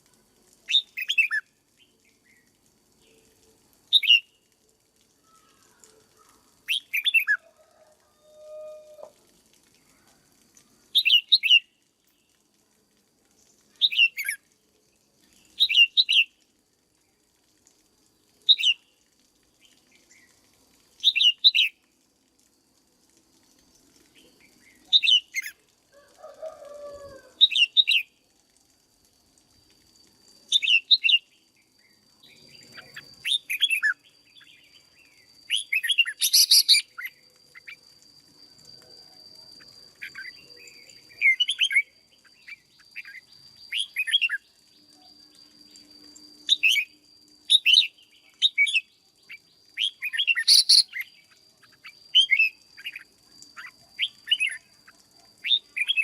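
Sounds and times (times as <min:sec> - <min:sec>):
bird singing chirpy phrases: 0:05.3 - 0:07.3, 0:30.6 - 0:37.8, 0:39.6 - 0:44.8, 0:47.6 - 0:56.0
faint steady high tone: 0:23.7 - 0:56.0.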